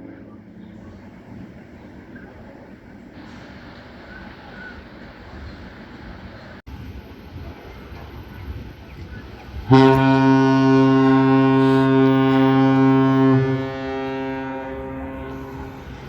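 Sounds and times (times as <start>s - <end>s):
deep ship horn blast: 9.6s - 16.0s.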